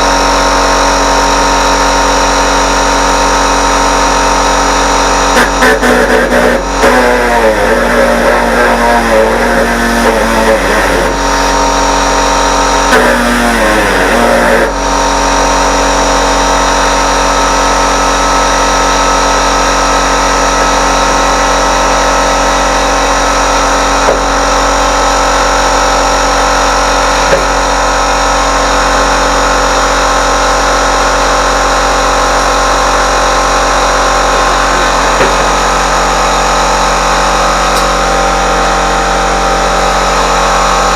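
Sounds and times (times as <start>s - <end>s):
machine droning: 0.0s - 40.9s.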